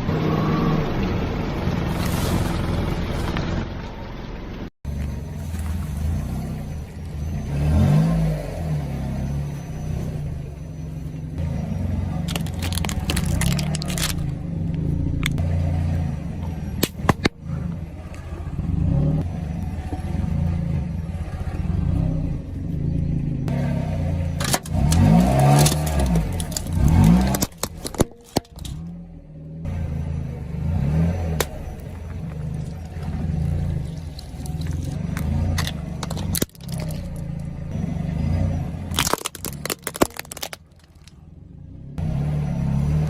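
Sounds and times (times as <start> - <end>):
car engine revving: 0.0 - 43.0
objects crushed cracking: 12.2 - 14.3, 24.4 - 28.8, 34.0 - 37.5, 38.9 - 41.2.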